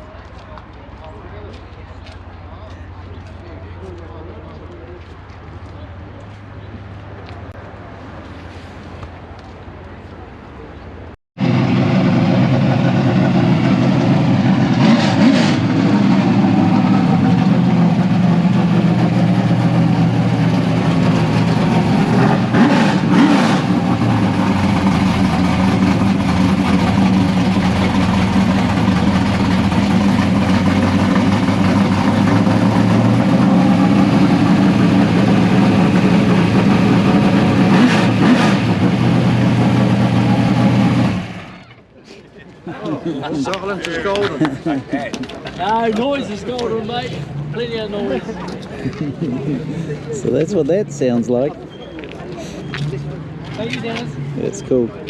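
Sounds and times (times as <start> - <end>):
car engine idling: 11.4 - 41.7.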